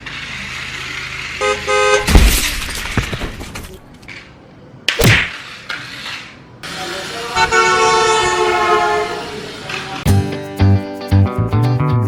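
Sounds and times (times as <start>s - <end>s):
horn toots: 7.4s - 9.4s.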